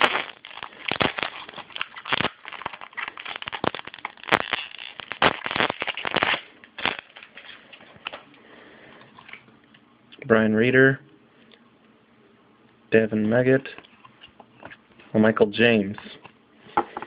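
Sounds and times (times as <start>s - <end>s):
wrapper tearing and crinkling: 0.0s - 8.2s.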